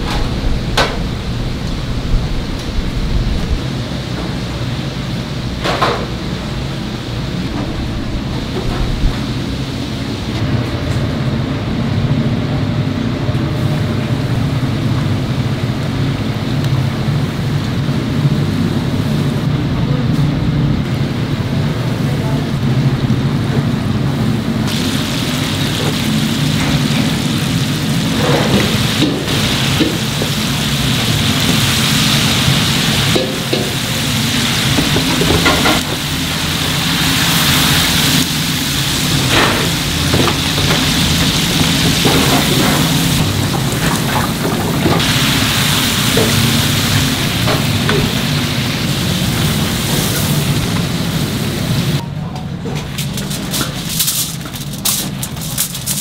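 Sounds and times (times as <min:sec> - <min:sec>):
low machine hum: 0:00.0 - 0:56.0
chicken sizzling in oil: 0:24.7 - 0:52.0
utensils clattering: 0:39.0 - 0:48.6, 0:52.6 - 0:56.0.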